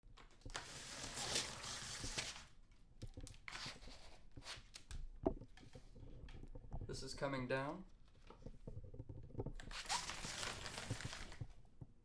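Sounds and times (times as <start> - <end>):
roller blind rolling rustle: 0.5 - 2.4, 9.7 - 11.4
roller blind clicks and knocks: 9.6 - 11.6.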